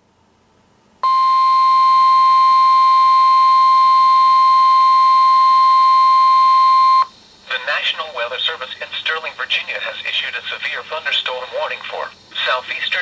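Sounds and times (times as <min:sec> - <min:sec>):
weather radio alarm tone: 0:01.0 - 0:13.0
static hiss: 0:07.1 - 0:13.0.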